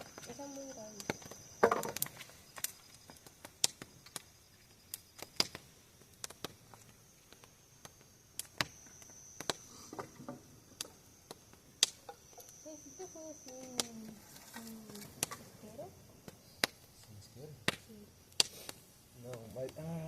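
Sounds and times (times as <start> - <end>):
bonfire crackling and popping: 0.0 - 20.0
high insect trill: 0.0 - 20.0.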